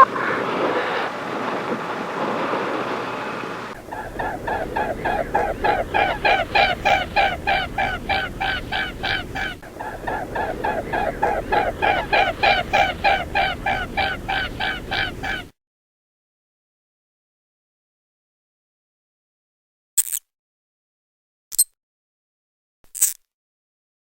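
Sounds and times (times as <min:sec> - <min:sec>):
bird calling rapidly: 0:00.0 - 0:15.5.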